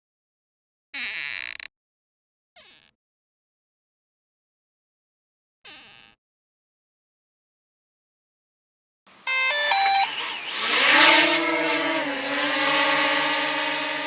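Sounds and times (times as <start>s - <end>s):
drone propeller motors whining: 9.1s - 14.0s
drone beeping tones: 9.3s - 13.0s.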